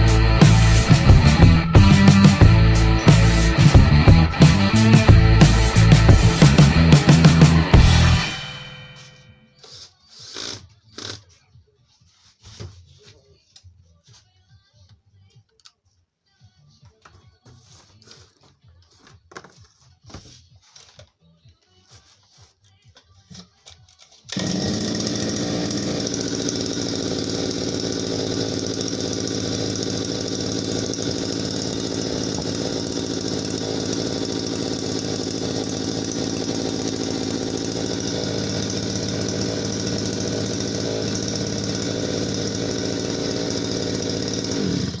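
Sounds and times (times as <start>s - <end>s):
two-stroke trimmer engine running: 0.0s - 9.0s, 24.3s - 45.0s.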